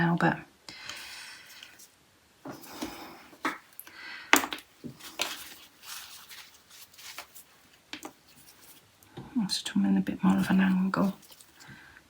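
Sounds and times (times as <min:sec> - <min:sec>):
small tools clicking and tapping: 0:02.8 - 0:05.6.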